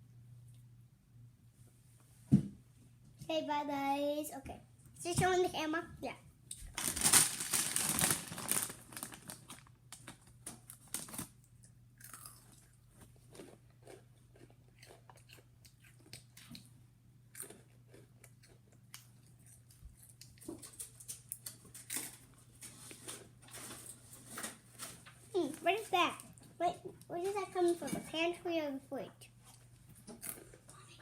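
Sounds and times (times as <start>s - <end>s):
faint steady hum: 0.0s - 31.0s
person chewing crunchy food: 11.0s - 22.0s, 29.5s - 30.9s.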